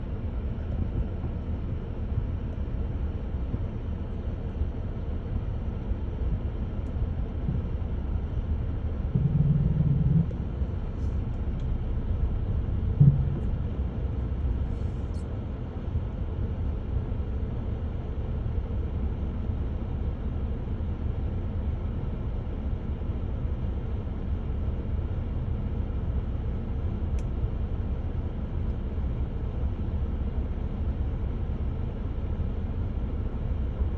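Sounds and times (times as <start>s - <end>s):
low background rumble: 0.0s - 33.9s
knock: 9.2s - 10.3s, 13.0s - 13.5s.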